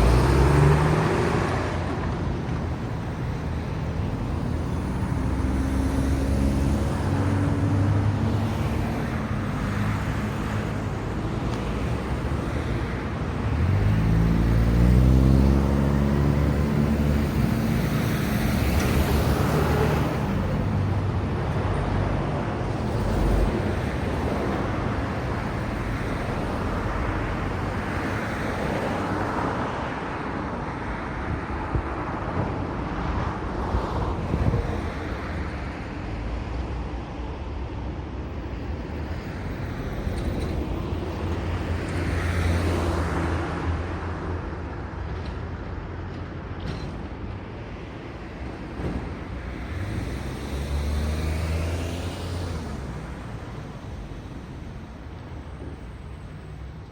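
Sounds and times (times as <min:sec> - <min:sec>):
tyre rush of car passing: 0:00.0 - 0:03.0, 0:47.8 - 0:56.6.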